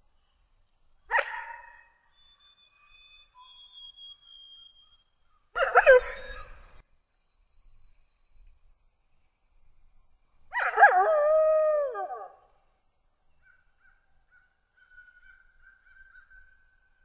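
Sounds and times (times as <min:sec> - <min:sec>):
wolf howling: 0:10.5 - 0:12.4.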